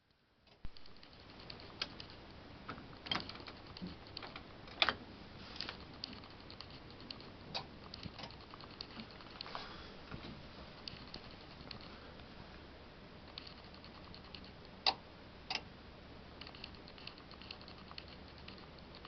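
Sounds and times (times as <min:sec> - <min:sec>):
faint irregular ticks: 0:00.0 - 0:04.9, 0:05.5 - 0:12.6, 0:13.2 - 0:15.7, 0:16.4 - 0:19.0.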